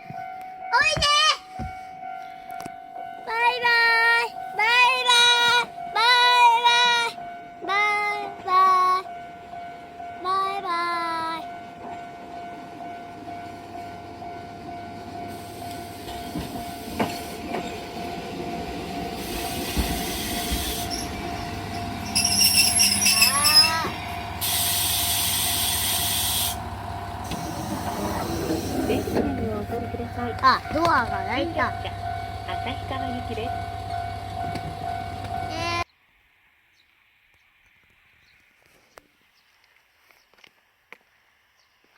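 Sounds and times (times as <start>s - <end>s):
train rumbling: 0.0s - 35.9s
train brakes squealing: 19.2s - 26.6s, 27.2s - 29.7s
air hiss: 24.4s - 26.6s.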